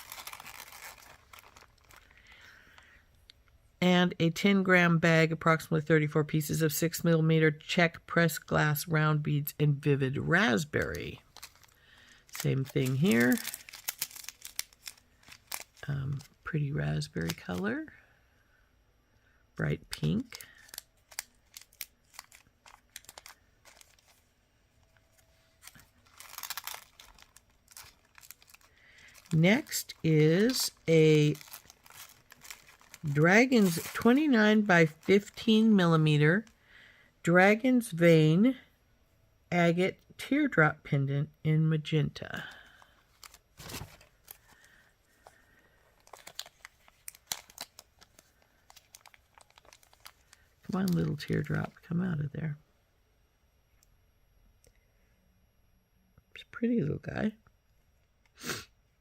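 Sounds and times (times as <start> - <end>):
plastic crinkling: 0.0 - 2.9, 10.6 - 17.8, 19.9 - 36.6, 42.4 - 51.9
plastic packets clicking and rustling: 0.0 - 2.9, 10.6 - 17.8, 19.9 - 24.2, 25.6 - 36.6, 42.4 - 51.9.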